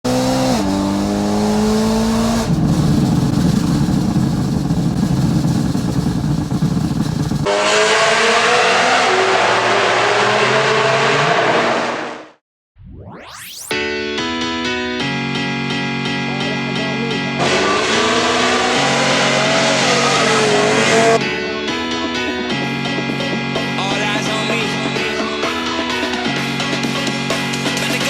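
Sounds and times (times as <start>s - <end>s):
car engine accelerating: 0.0s - 12.2s, 17.4s - 21.2s
exhaust crackle: 0.1s - 8.7s, 17.4s - 21.2s.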